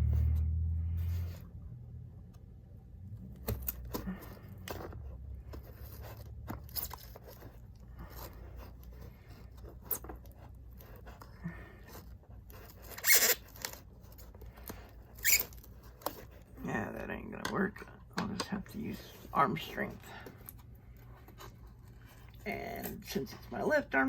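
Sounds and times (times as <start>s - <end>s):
rustling: 3.0s - 17.0s
rasping tear: 3.3s - 16.5s.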